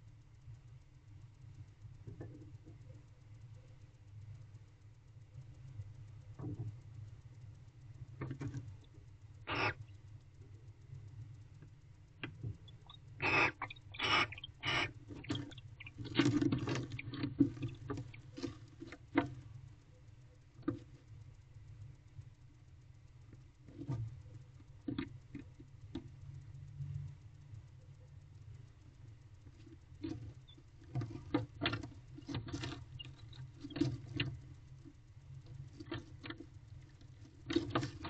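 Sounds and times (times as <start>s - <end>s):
low steady hum: 0.0s - 38.0s
owl scratching and shuffling: 8.0s - 10.1s, 11.5s - 20.0s, 29.0s - 38.0s
owl short noisy rasps: 9.5s - 9.9s, 12.8s - 15.9s.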